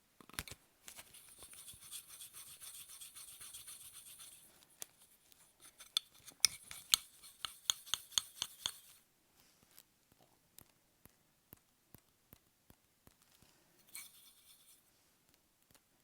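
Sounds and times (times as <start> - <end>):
scratchy rubbing on paper: 1.0 - 9.0, 13.9 - 14.8.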